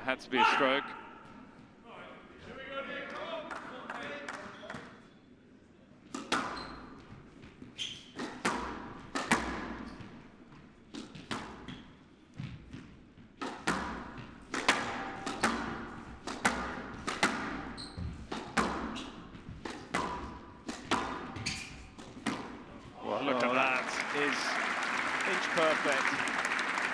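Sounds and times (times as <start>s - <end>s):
squash ball hitting rackets and walls: 6.1s - 22.8s.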